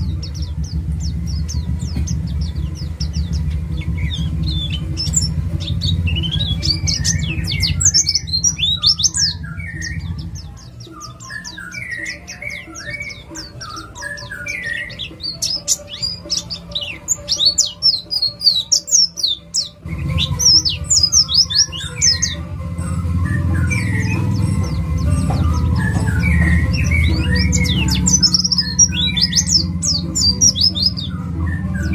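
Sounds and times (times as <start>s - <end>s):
low hum: 0.0s - 10.6s
bird singing high falling notes: 0.0s - 31.9s
bird warbling: 0.0s - 31.9s.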